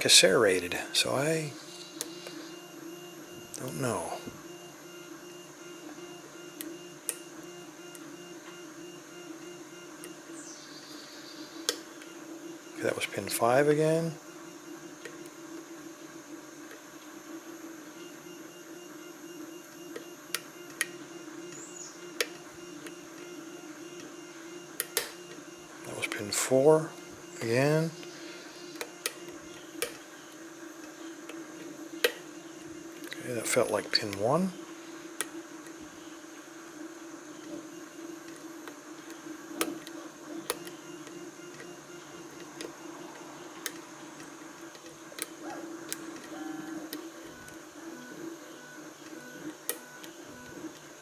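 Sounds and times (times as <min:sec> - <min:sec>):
three d printer humming: 0:00.0 - 0:51.0.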